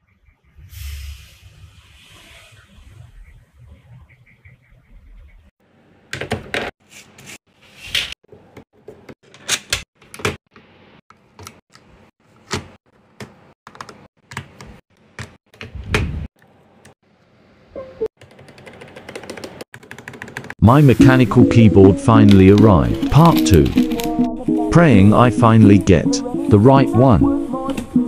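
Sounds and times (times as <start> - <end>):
mechanical keyboard typing: 18.2 - 20.6.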